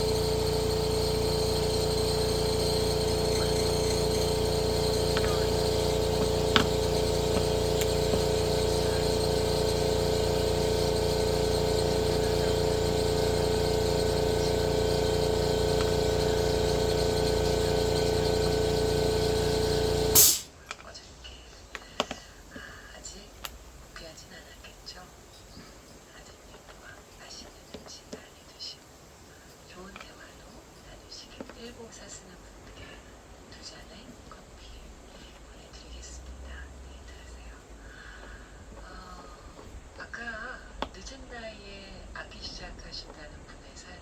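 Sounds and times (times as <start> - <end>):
motor humming: 0.0 - 20.5.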